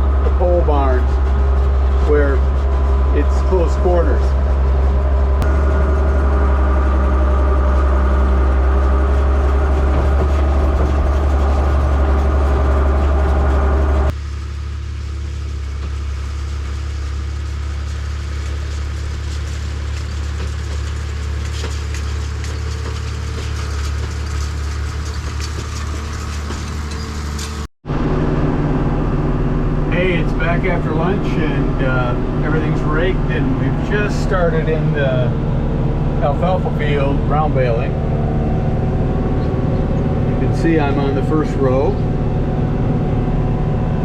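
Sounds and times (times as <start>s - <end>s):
hissy engine noise: 0.0s - 14.5s, 28.4s - 44.0s
tractor engine droning: 0.0s - 44.0s.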